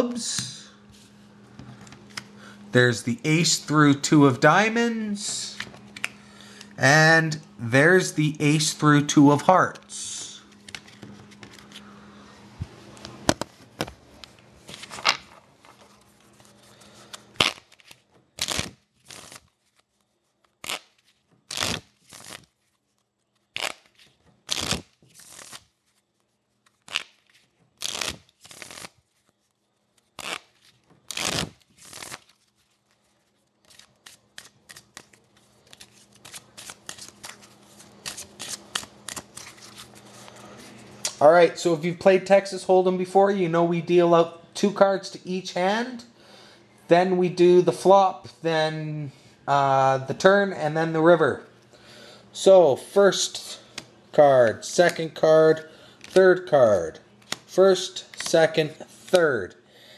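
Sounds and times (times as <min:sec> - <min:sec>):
playing cards being shuffled: 0:09.7 - 0:11.9, 0:12.6 - 0:41.2, 0:57.2 - 0:59.3.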